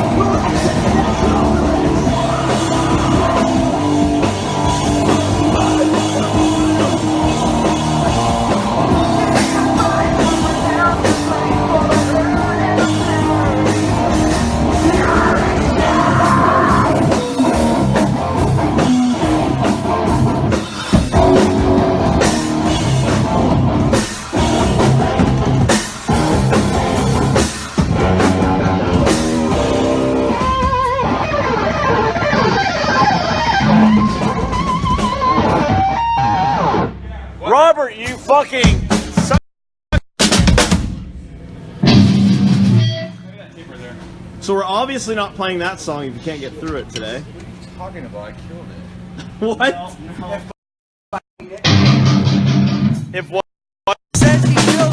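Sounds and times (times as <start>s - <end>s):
person singing: 0.0s - 4.0s, 4.7s - 17.8s, 54.2s - 54.9s
drum kit: 0.0s - 37.0s, 37.6s - 43.4s, 51.4s - 54.9s
electric guitars: 0.0s - 37.1s, 51.4s - 53.0s.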